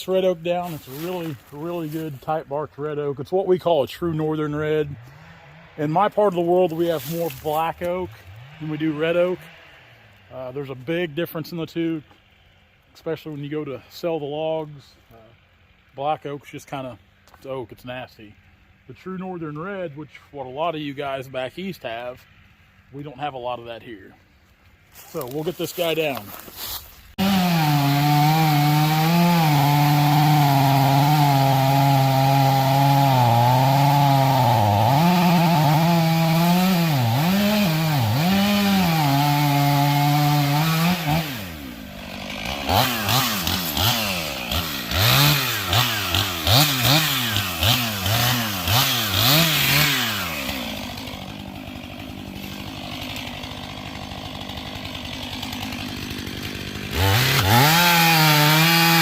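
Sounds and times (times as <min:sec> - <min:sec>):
chainsaw cutting wood: 0:00.0 - 0:02.4, 0:03.6 - 0:13.5, 0:24.9 - 0:59.0.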